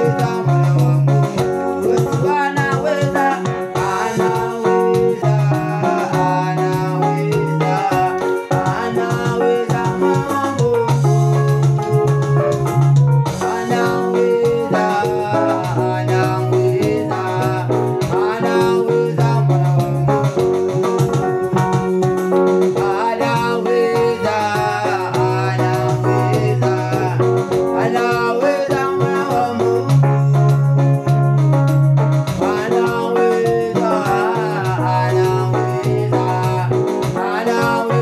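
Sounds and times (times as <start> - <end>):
upbeat music with singing: 0.0 - 38.0.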